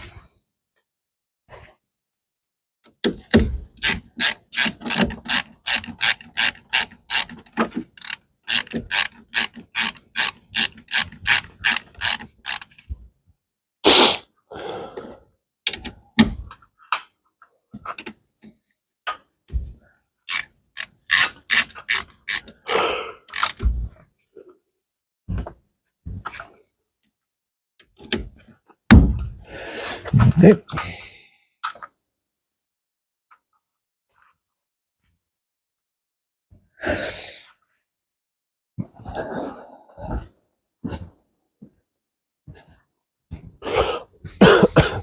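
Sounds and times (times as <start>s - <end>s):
ratchet wrench clicking: 3.8s - 7.4s, 8.0s - 12.7s, 20.3s - 23.6s.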